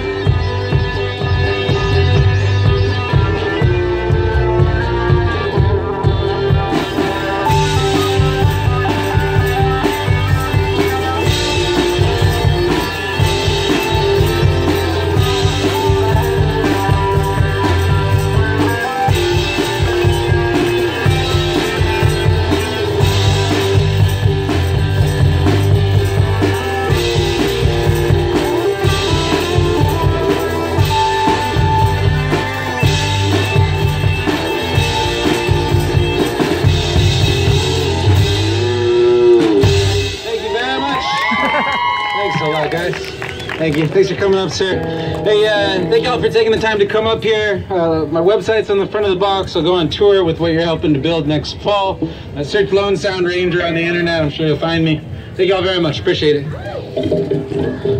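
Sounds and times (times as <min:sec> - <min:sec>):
guitar playing: 0:00.0 - 0:40.4, 0:44.3 - 0:47.2
drum beat: 0:00.0 - 0:40.6.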